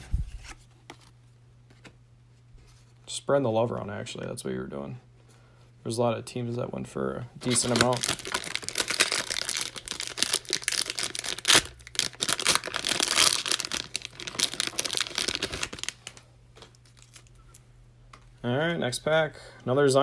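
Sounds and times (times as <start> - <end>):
cellophane wrapper crinkling tearing: 7.4 - 17.6.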